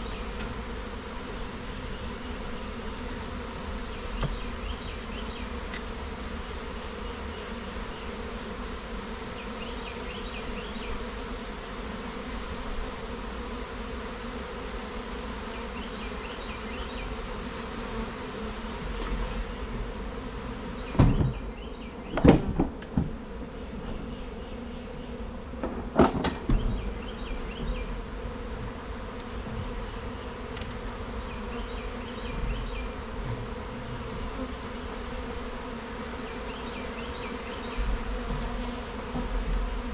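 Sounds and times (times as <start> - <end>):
honeybees humming: 0.0 - 39.9
loud knocks: 20.9 - 21.5, 22.1 - 23.2, 25.6 - 29.9, 31.6 - 34.5.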